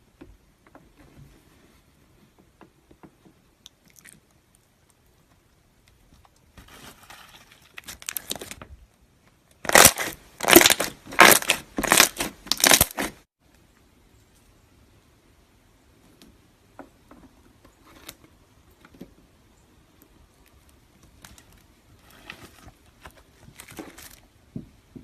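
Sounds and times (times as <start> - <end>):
crackly slime squelches: 3.5 - 6.6, 7.2 - 13.3
slime crinkling: 7.2 - 8.6, 9.6 - 13.2.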